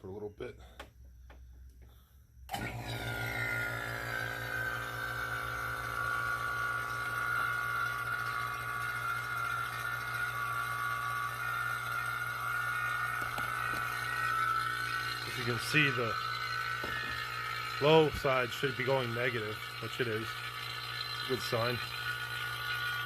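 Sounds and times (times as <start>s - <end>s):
electric vacuum pump whining: 0.8s - 23.0s.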